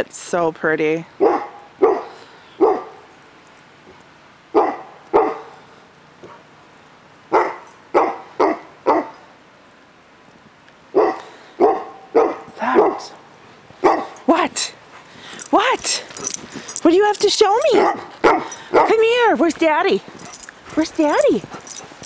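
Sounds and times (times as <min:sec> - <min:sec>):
dog barking: 0:01.2 - 0:03.1, 0:04.5 - 0:05.6, 0:07.3 - 0:09.2, 0:10.9 - 0:13.2, 0:13.8 - 0:14.3, 0:17.7 - 0:19.1.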